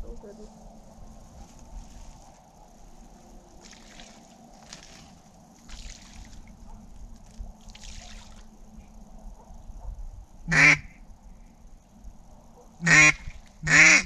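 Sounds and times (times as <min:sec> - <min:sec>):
water sloshing and trickling: 0:02.9 - 0:08.8
duck quack: 0:10.5 - 0:10.8, 0:12.8 - 0:14.0.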